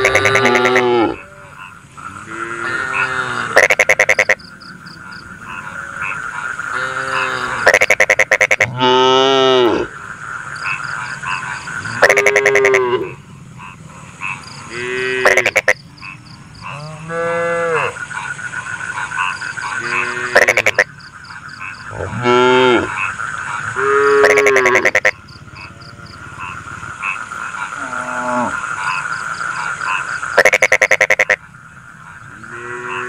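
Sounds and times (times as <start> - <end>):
cattle mooing: 0.0 - 3.6, 6.8 - 7.7, 16.7 - 18.0, 19.8 - 20.6, 21.9 - 22.9, 27.8 - 28.6, 32.4 - 33.0
rapid pulsed croaking: 0.0 - 33.0.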